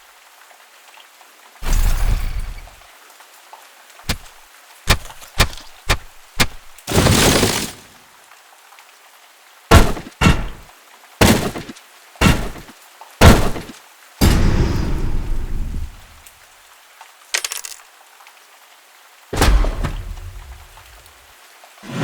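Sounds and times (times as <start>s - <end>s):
crash of breaking debris: 1.6s - 2.8s, 4.1s - 8.0s, 9.7s - 10.6s, 11.2s - 16.0s, 19.4s - 21.1s
sharp knocks: 4.1s - 6.9s, 9.7s - 10.6s, 11.2s - 14.5s
heavy thuds: 4.1s - 7.8s, 9.7s - 16.2s.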